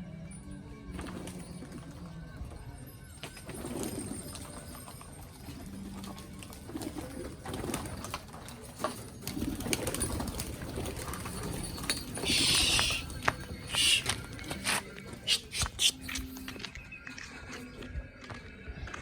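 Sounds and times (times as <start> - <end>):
pigeons cooing: 5.4 - 8.3, 9.2 - 16.4.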